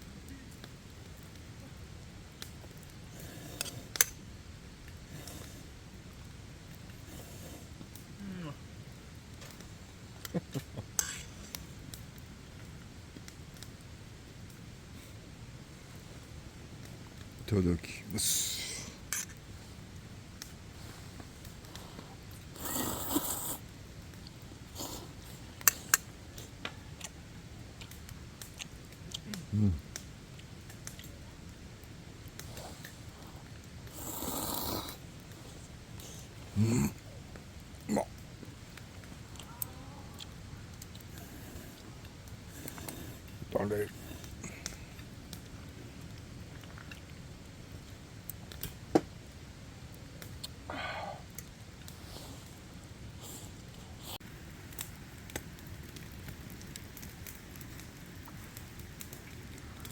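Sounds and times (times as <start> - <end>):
quiet chewing: 2.4 - 4.2, 4.8 - 8.6, 9.3 - 13.8, 18.9 - 48.8, 50.2 - 59.9
noodles being slurped: 22.5 - 23.6, 33.9 - 37.0.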